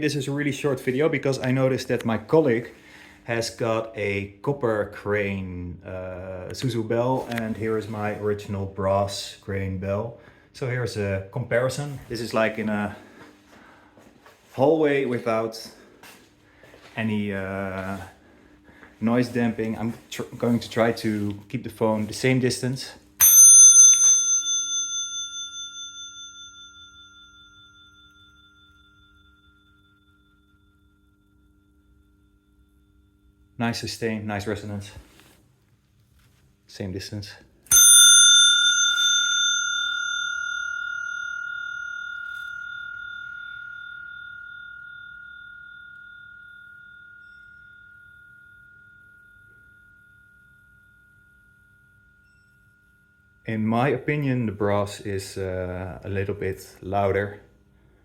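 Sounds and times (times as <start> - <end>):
bicycle bell ringing: 23.2 - 33.4, 37.7 - 54.5.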